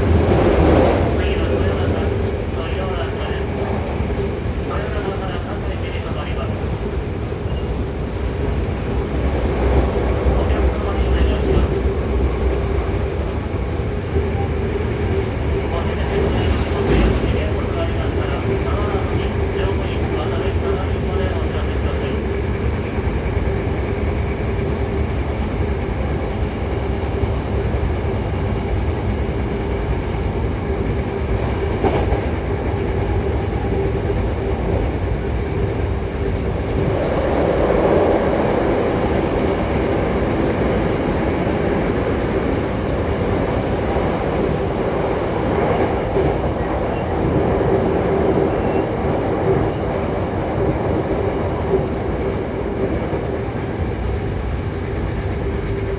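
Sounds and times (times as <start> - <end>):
constant train hum: 0.0 - 55.9
train wheels clickety-clack: 15.9 - 20.4, 30.8 - 35.7.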